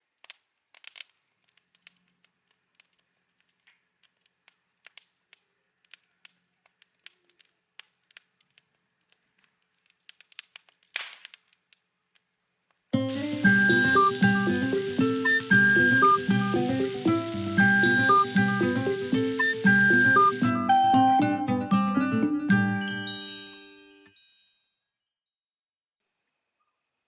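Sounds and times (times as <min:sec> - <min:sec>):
wood campfire crackling: 0:00.0 - 0:12.2, 0:13.0 - 0:20.5
sharp pops of fire: 0:00.1 - 0:11.8, 0:13.1 - 0:20.5.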